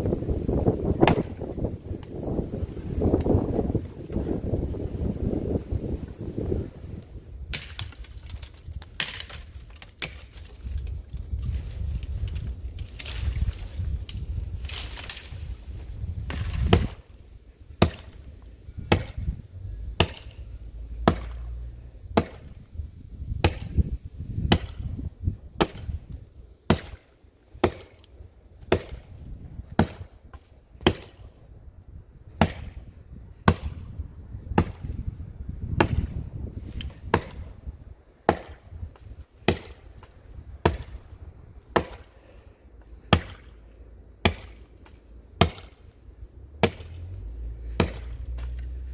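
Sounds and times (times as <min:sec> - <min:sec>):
axe chopping into tree trunk: 0:01.0 - 0:01.6, 0:07.5 - 0:10.8, 0:16.2 - 0:17.0, 0:17.8 - 0:18.2, 0:18.8 - 0:19.3, 0:20.0 - 0:20.4, 0:21.0 - 0:22.6, 0:23.4 - 0:25.0, 0:25.6 - 0:26.0, 0:26.7 - 0:28.0, 0:28.6 - 0:29.1, 0:29.7 - 0:31.2, 0:32.4 - 0:32.8, 0:33.4 - 0:33.9, 0:34.5 - 0:35.0, 0:35.7 - 0:37.6, 0:38.2 - 0:41.1, 0:41.7 - 0:42.2, 0:43.0 - 0:43.6, 0:44.2 - 0:45.9, 0:46.6 - 0:47.0, 0:47.7 - 0:48.8.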